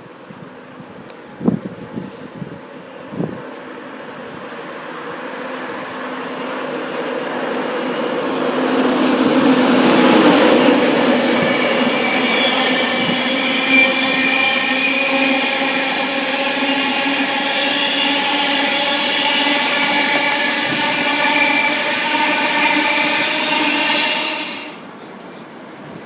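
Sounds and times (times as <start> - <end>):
train passing: 3.6 - 25.9
high-pitched wheel squeal: 9.2 - 24.8.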